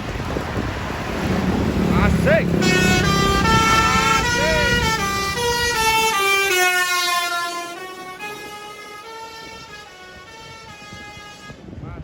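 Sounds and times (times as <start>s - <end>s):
musical bus horn melody: 2.6s - 11.7s.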